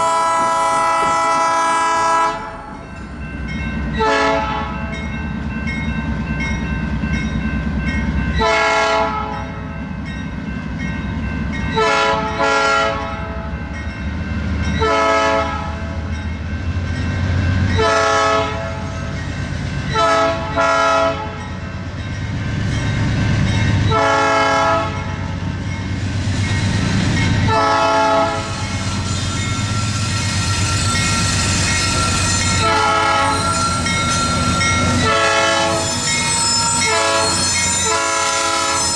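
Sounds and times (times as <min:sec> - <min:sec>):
locomotive air horn blasts: 0:00.0 - 0:02.7, 0:04.0 - 0:04.8, 0:08.4 - 0:09.4, 0:11.8 - 0:13.3, 0:14.8 - 0:15.8, 0:17.8 - 0:18.9, 0:20.0 - 0:21.4, 0:23.9 - 0:25.1, 0:27.5 - 0:29.1, 0:32.5 - 0:33.9, 0:35.0 - 0:38.9
low rumble of passing train: 0:00.0 - 0:38.9.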